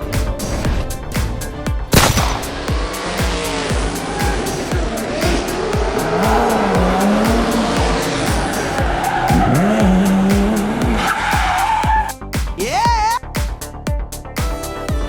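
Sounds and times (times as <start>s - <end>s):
rising engine-like tone: 0.0s - 11.7s
race car engines: 0.0s - 12.0s
background music with steady beat: 0.0s - 15.0s
tyres squealing and skidding: 2.2s - 12.2s.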